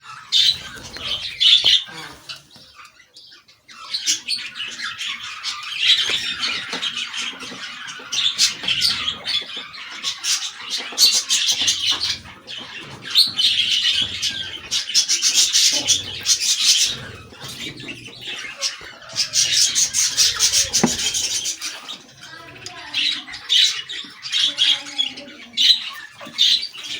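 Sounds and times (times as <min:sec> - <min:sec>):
lovebirds squawking and chirping: 0:00.0 - 0:26.9.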